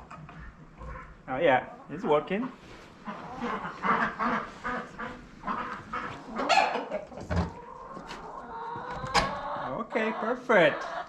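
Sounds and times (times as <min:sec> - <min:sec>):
fowl calling: 0:02.4 - 0:11.0.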